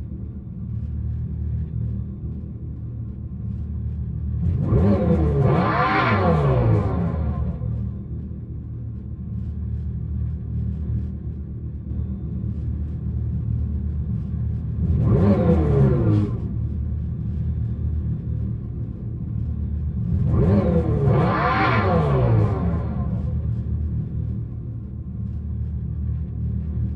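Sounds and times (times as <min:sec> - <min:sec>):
synthetic engine sound revving: 0:04.5 - 0:08.0, 0:14.8 - 0:16.6, 0:20.0 - 0:23.6.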